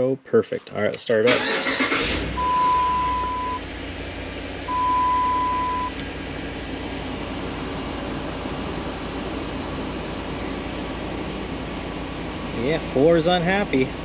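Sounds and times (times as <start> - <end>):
engine idling with misfire: 1.3 - 14.0
loud steady beep: 2.4 - 3.6, 4.7 - 6.0.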